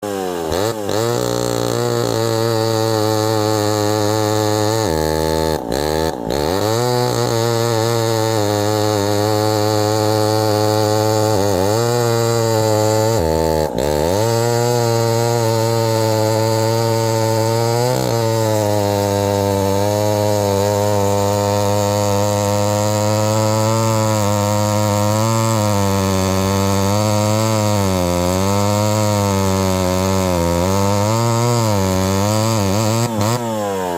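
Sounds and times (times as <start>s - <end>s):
chainsaw running at high revs: 0.0s - 33.9s.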